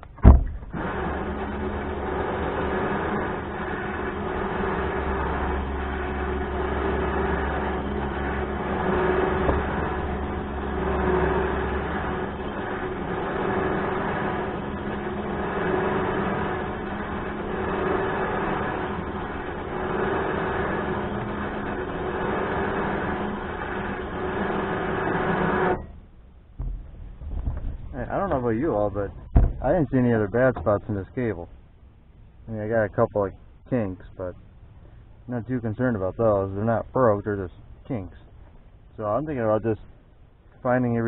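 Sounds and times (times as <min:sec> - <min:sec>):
electric winch motor whining: 0:00.0 - 0:26.0.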